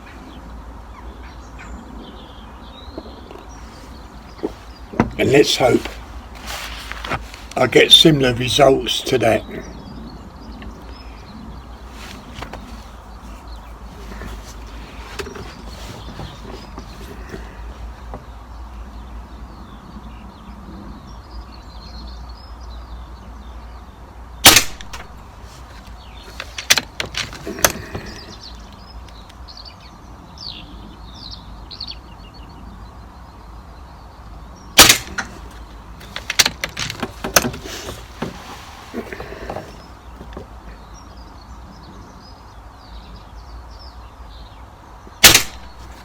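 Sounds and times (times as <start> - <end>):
air rifle shots: 24.4 - 25.2, 34.8 - 35.6, 45.2 - 46.0
rifle action clicks and knocks: 26.3 - 28.4, 34.8 - 38.4.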